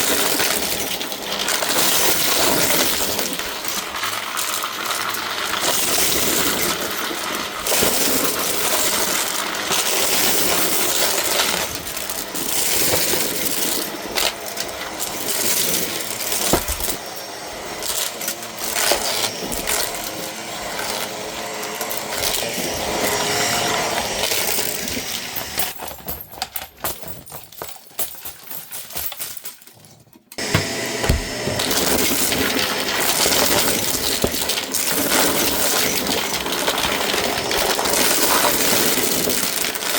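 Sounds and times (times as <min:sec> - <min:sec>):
vacuum cleaner running: 0:00.0 - 0:25.8, 0:30.4 - 0:39.9
debris rattling in vacuum: 0:30.4 - 0:39.9.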